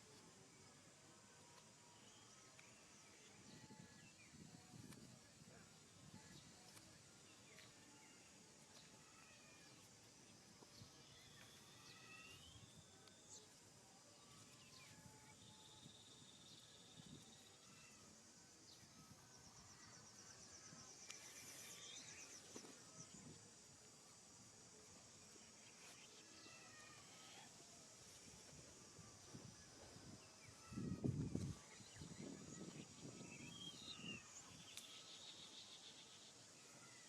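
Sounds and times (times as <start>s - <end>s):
high insect drone: 0.0s - 37.0s.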